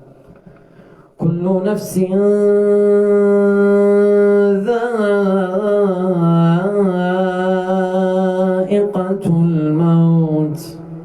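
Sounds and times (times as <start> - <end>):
man chanting melodically: 1.2 - 11.0.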